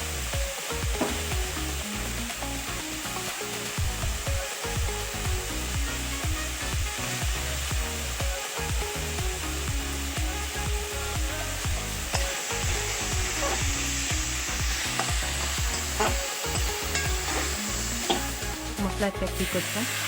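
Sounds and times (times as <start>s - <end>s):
food sizzling in hot oil: 0.0s - 20.0s
spatula scraping a pan: 15.0s - 18.4s.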